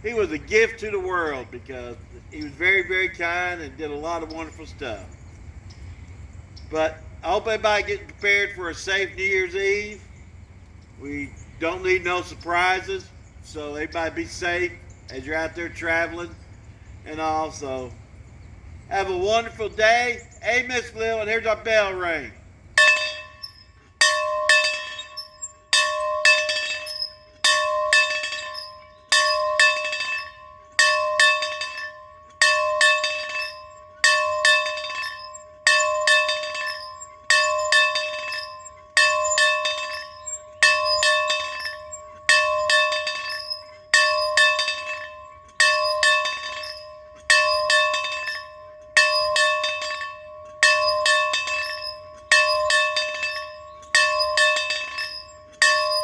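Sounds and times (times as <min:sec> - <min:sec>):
bell ringing: 0:22.8 - 0:56.0.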